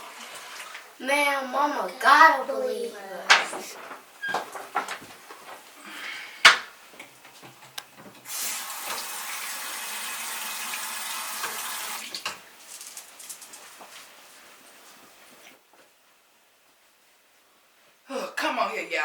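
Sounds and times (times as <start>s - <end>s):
sink tap running: 8.2s - 12.3s.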